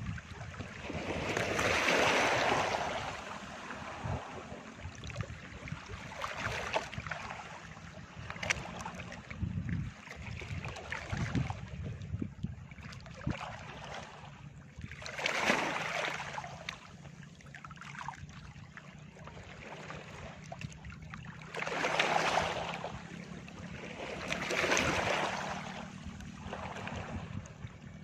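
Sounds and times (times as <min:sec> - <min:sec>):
sea waves washing onto beach: 0:00.8 - 0:04.7, 0:23.8 - 0:27.2.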